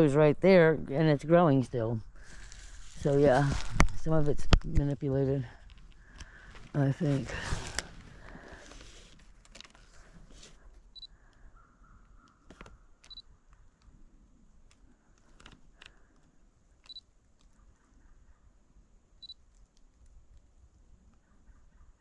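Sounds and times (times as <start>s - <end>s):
faint clicks and crackles: 2.3s - 6.8s, 12.0s - 17.7s, 19.3s - 21.3s.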